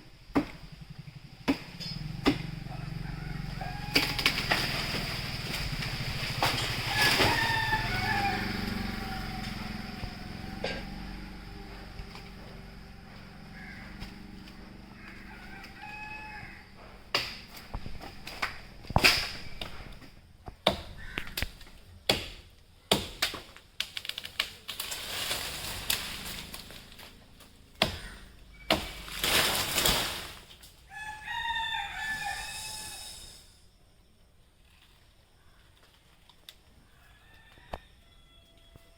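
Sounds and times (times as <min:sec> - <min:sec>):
rooster crowing: 0:02.6 - 0:05.2, 0:06.5 - 0:17.1, 0:30.9 - 0:33.5, 0:36.8 - 0:38.9
rustling: 0:23.8 - 0:27.5, 0:28.7 - 0:30.8.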